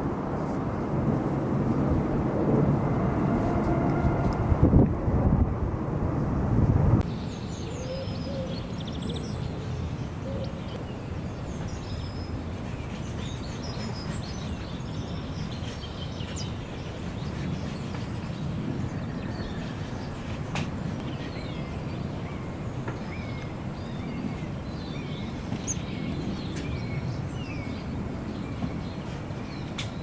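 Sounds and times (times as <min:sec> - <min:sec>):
low rumble: 0:00.0 - 0:07.1
small birds chirping: 0:07.0 - 0:30.0.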